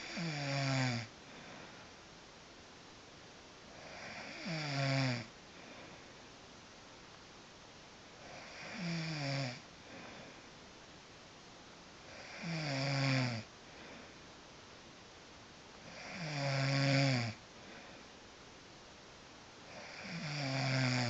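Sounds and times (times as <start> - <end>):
woman snoring: 0.0 - 1.5, 3.7 - 5.3, 8.2 - 10.2, 12.1 - 13.5, 15.8 - 17.9, 19.7 - 21.0.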